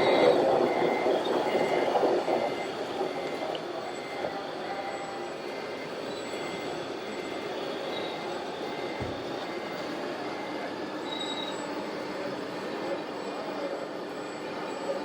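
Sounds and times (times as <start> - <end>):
model truck running noise: 0.0 - 9.1
high reversing beeps: 0.0 - 12.3.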